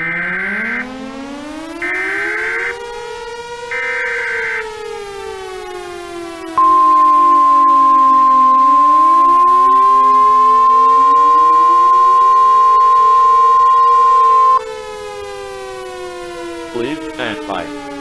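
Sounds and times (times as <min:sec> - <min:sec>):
loud steady alarm beep: 0:00.0 - 0:05.6, 0:06.2 - 0:14.6
outdoor warning sirens: 0:00.0 - 0:18.0.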